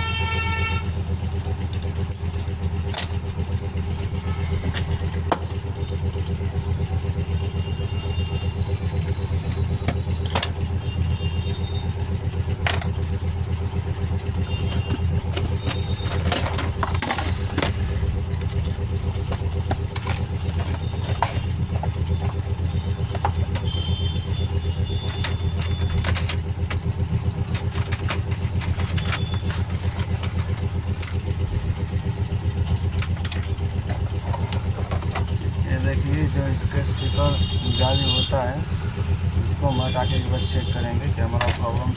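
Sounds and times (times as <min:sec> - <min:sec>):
low machine hum: 0:00.0 - 0:41.9
small tools clicking and tapping: 0:01.6 - 0:03.3, 0:08.2 - 0:11.1, 0:12.4 - 0:35.6, 0:41.3 - 0:41.9.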